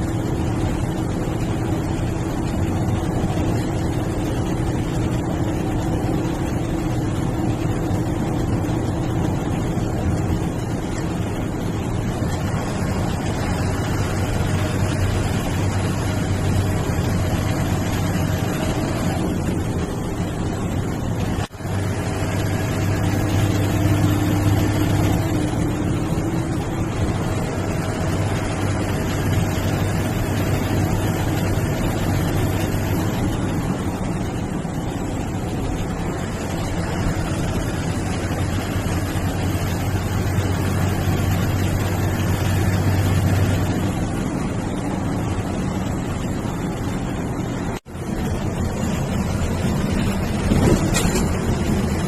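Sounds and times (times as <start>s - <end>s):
bus diesel engine running: 0.0s - 52.0s
road and wind noise: 0.0s - 52.0s.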